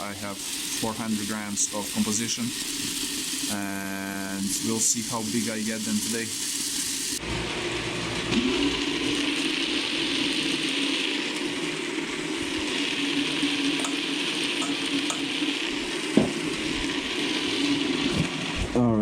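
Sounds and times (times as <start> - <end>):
grainy hiss of tumbling pellets: 0.0 - 7.2
machine motor hum: 7.2 - 19.0.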